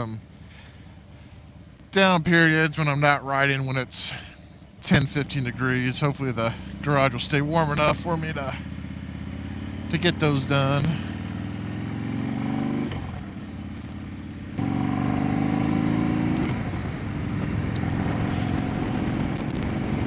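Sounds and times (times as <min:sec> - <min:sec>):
motorcycle engine revving: 0:04.9 - 0:20.0.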